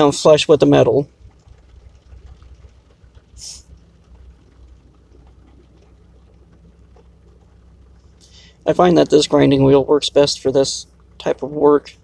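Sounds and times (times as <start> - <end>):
faint low hum: 0.0 - 12.0
brief hiss: 3.4 - 3.7.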